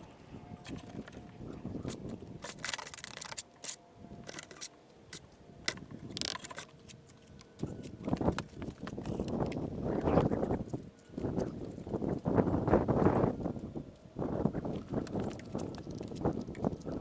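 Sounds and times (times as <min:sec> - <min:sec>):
stone and tools clicking and scraping: 0:01.9 - 0:09.6.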